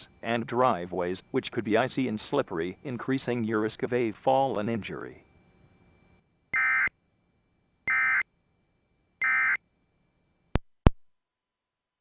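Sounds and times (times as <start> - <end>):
harsh digital tone bursts: 7.9 - 8.2.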